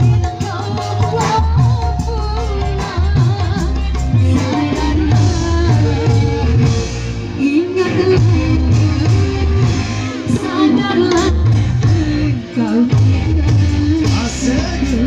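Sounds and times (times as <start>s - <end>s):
woman singing: 0.0s - 15.0s.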